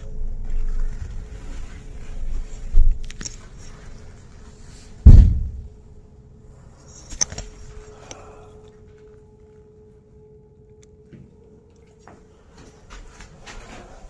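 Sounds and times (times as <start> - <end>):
heavy low thud: 5.0 - 5.9
sharp knock: 5.1 - 5.8.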